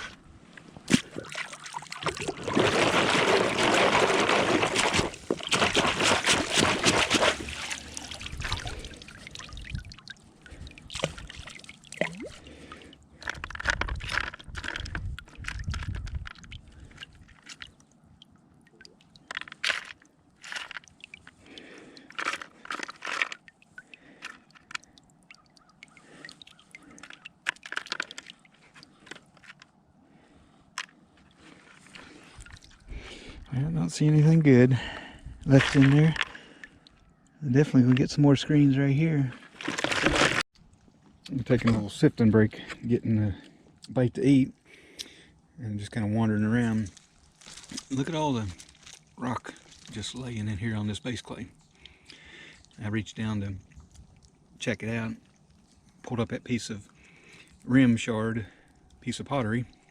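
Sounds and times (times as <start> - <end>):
gravel sloshed in water: 0.0 - 37.0, 37.7 - 44.0, 46.0 - 59.9
stones rattling in screen: 2.2 - 8.0, 39.5 - 40.5.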